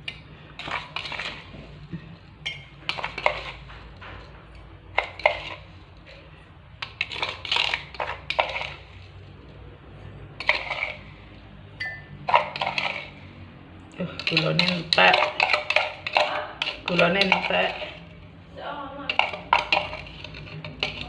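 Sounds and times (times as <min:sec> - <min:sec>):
metal spoon clinking against glass: 0:02.5 - 0:02.7, 0:11.8 - 0:12.1.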